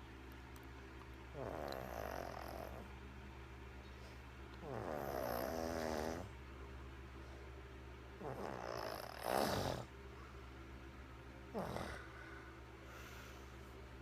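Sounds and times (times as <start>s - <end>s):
woman snoring: 1.3s - 2.9s, 4.6s - 6.3s, 8.2s - 9.9s, 11.5s - 12.2s.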